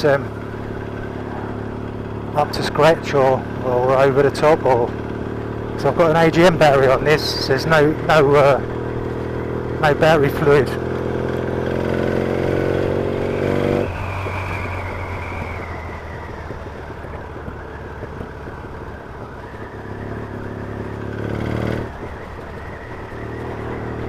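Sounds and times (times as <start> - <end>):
motorcycle engine pulling under throttle: 0.0 - 24.0
wind and road noise: 0.0 - 24.0.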